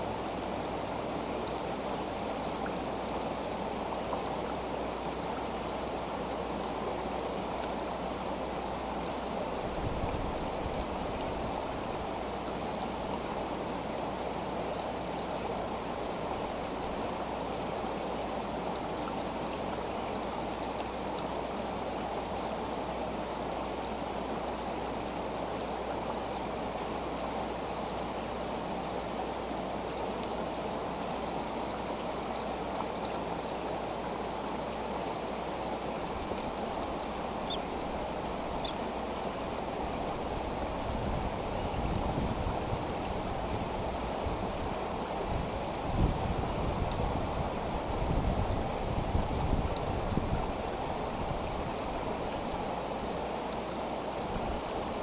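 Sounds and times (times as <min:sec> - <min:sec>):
faint high chirps: 0:37.4 - 0:37.8.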